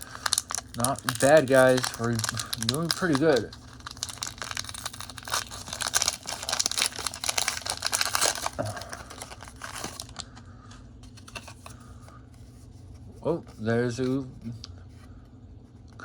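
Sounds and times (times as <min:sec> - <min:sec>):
foil wrapper tearing and crinkling: 0:00.0 - 0:10.3.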